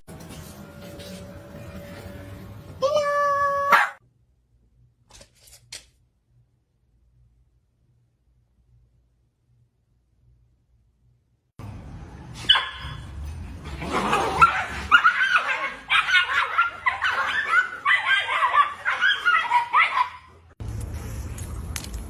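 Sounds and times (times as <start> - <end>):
dog yipping and whining: 2.8 - 4.0, 12.4 - 13.0, 14.1 - 20.4.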